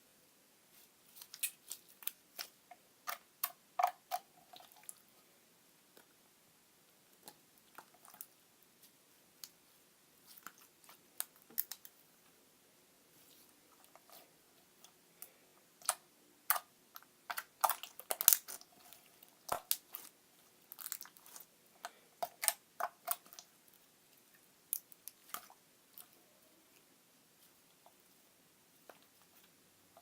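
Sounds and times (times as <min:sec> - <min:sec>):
slime squishing with sticky pops: 0:14.8 - 0:23.8, 0:24.7 - 0:26.2.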